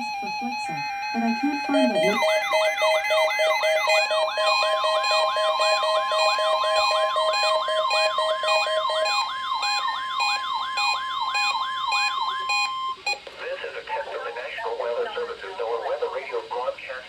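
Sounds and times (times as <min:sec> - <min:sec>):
rapid pulsed beep: 0:00.0 - 0:13.1
warbling siren tone: 0:00.0 - 0:13.1
steady high alert tone: 0:00.0 - 0:13.2.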